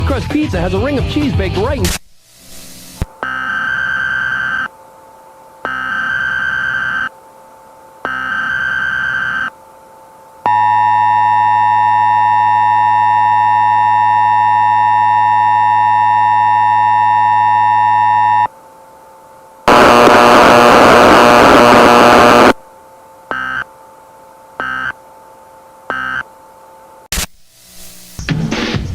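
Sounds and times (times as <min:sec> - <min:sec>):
screeching digital data bursts: 0:03.2 - 0:04.7, 0:05.7 - 0:07.1, 0:08.1 - 0:09.5
loud burst of noise: 0:19.7 - 0:22.6.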